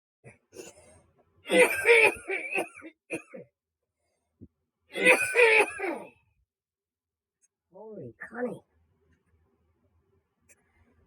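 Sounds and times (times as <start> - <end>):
man coughing hard: 1.5 - 3.5, 5.0 - 6.1.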